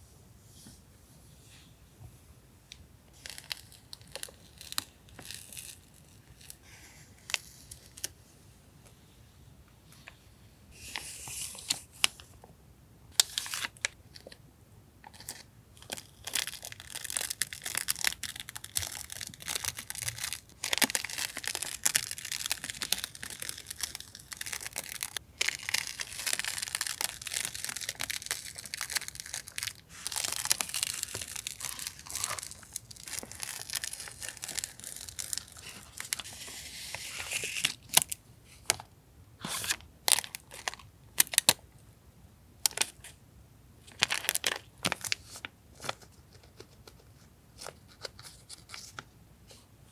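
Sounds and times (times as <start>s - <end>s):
packaging rustling and crinkling: 15.1s - 38.8s, 43.9s - 49.1s.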